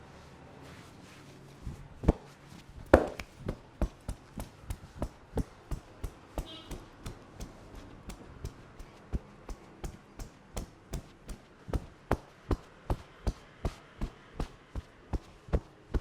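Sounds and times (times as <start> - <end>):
hand slaps on head: 3.0 - 3.4.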